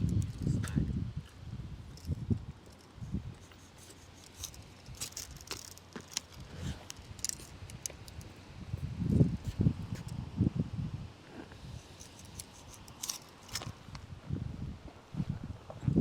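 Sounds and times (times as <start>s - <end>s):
metal tools clicking and jangling: 1.9s - 8.3s, 11.8s - 13.9s.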